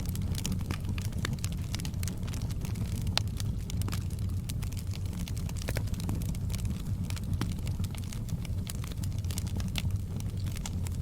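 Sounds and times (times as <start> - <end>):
wood fire crackling: 0.0 - 11.0.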